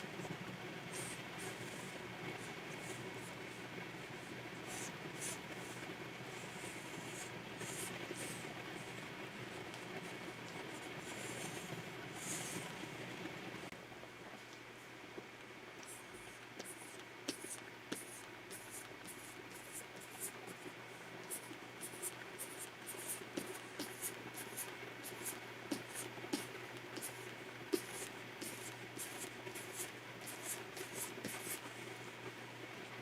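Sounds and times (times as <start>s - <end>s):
faint steady hum: 0.0s - 33.0s
stylus scratching on screen: 21.3s - 31.7s.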